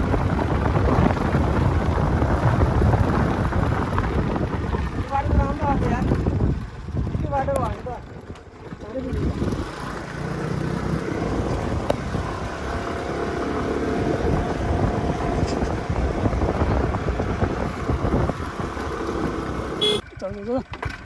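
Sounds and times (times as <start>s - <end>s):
road rumble: 0.0s - 21.0s
scooter engine running: 0.0s - 21.0s
wind: 0.0s - 21.0s.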